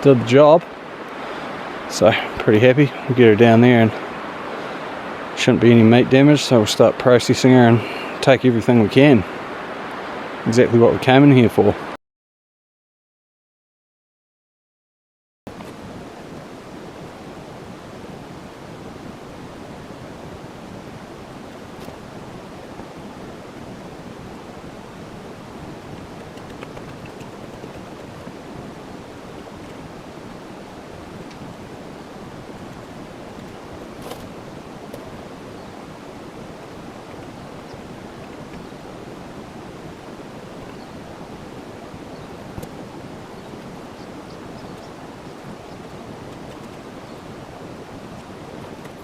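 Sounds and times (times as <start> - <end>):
running water rushing: 0.0 - 12.0, 15.5 - 49.0
faint clicks: 26.0 - 27.8, 46.3 - 46.8.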